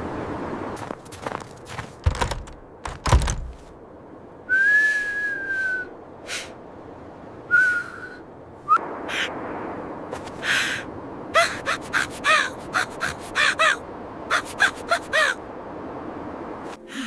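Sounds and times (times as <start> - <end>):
person whistling: 4.5 - 5.9, 7.5 - 8.8.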